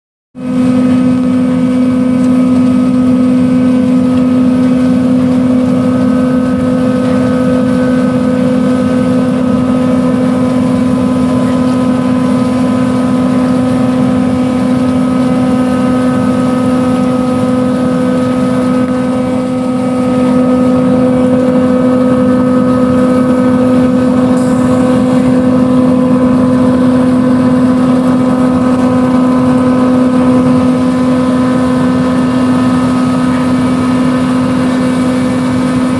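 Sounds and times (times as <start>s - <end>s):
harvest machinery engine drone: 0.4s - 35.9s.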